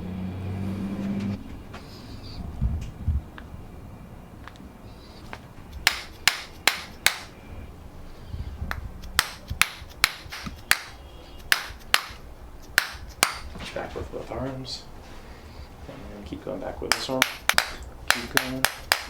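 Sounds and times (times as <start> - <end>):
sharp knocks or slaps: 5.8 - 7.4, 8.7 - 12.2, 12.8 - 13.6, 16.9 - 19.0.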